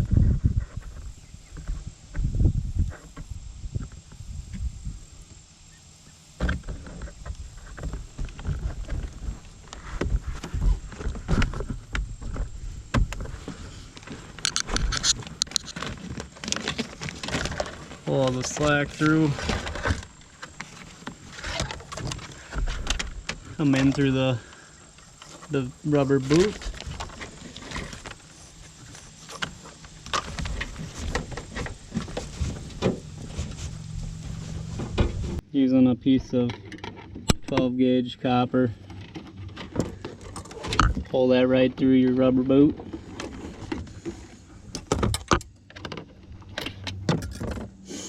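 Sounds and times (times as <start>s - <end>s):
hands feeding wires through rubber boot: 6.5s - 24.2s
sharp scraping clicks: 13.9s - 23.1s.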